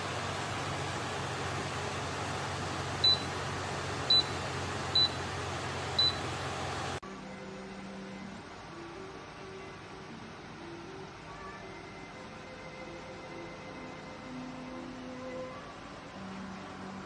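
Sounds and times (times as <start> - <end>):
tower fan blowing: 0.0 - 17.0
short high beeps: 3.0 - 3.3, 6.0 - 6.2.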